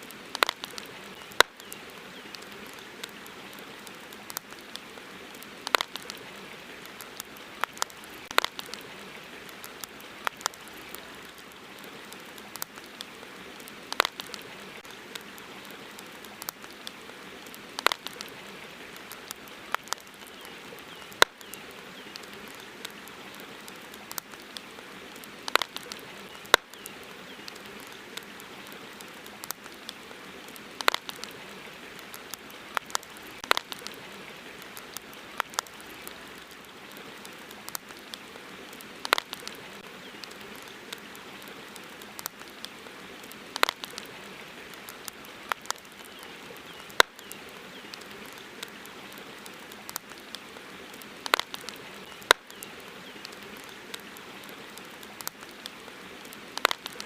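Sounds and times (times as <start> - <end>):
campfire crackling: 0.0 - 57.0
steady background hiss: 0.0 - 57.0.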